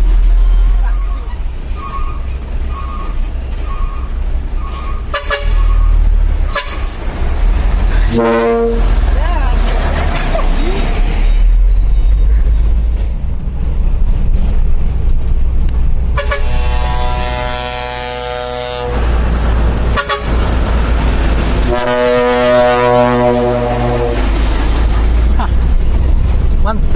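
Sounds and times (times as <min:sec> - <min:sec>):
truck air horn blasts: 0:01.0 - 0:07.1, 0:08.0 - 0:09.0, 0:16.1 - 0:19.2, 0:19.9 - 0:20.6, 0:21.6 - 0:24.5
low rumble: 0:07.1 - 0:26.9.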